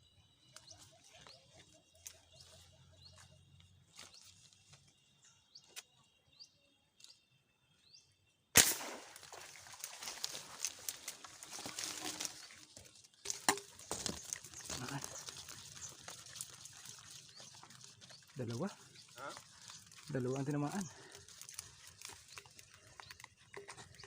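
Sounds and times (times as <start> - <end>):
small birds chirping: 0.0 - 24.0
sharp crack: 8.6 - 9.6
rustling and splashing: 8.6 - 24.0.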